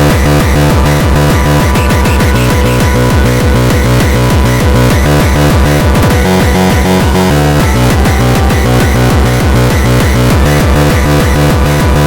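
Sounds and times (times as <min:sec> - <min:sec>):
distorted kick drum: 0:00.0 - 0:12.0
sustained synth tones: 0:00.0 - 0:12.0.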